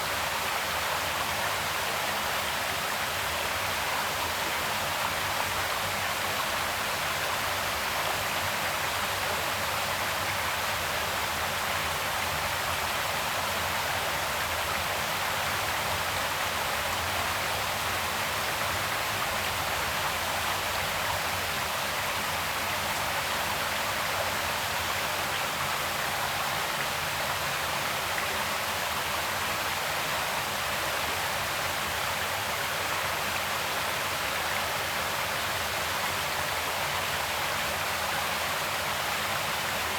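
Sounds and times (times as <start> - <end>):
creek water flowing: 0.0 - 39.9.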